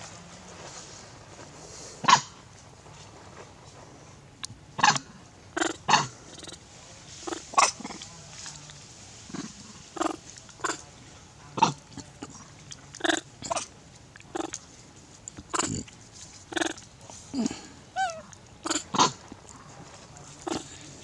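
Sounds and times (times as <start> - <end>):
baby monkey calling: 16.5 - 16.8, 18.0 - 19.1.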